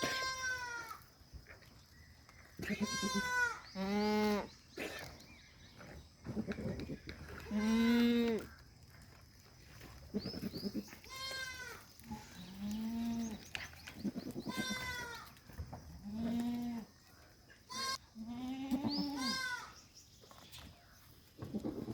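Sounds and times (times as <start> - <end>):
goats bleating: 0.0 - 1.0, 2.6 - 4.5, 6.3 - 8.6, 10.1 - 13.4, 14.0 - 15.3, 16.0 - 16.9, 17.7 - 19.8.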